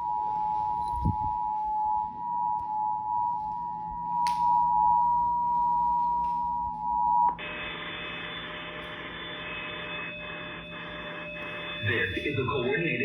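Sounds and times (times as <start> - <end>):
two-tone alert signal: 11.4 - 12.7.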